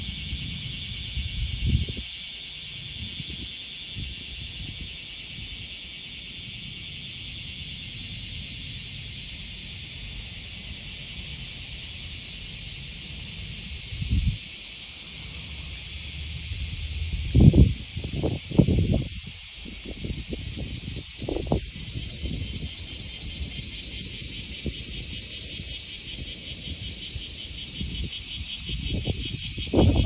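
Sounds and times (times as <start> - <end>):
cicadas chorus: 0.0 - 30.0.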